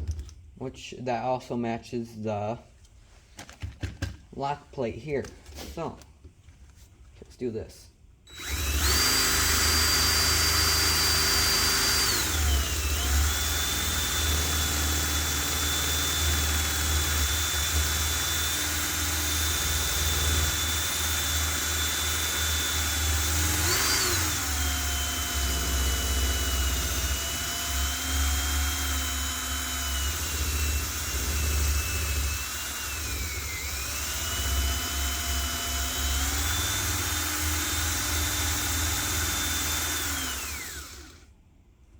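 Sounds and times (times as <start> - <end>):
electric drill motor whine: 8.3 - 41.2.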